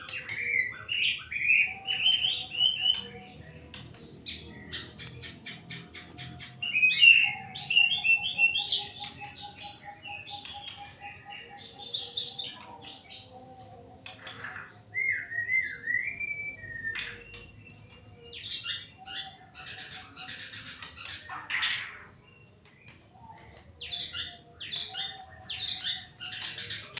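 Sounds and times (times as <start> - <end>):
songbird singing: 0.0 - 26.9.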